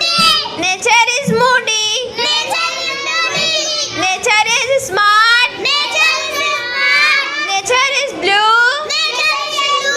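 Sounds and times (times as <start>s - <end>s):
child singing: 2.1s - 4.0s, 8.9s - 9.9s.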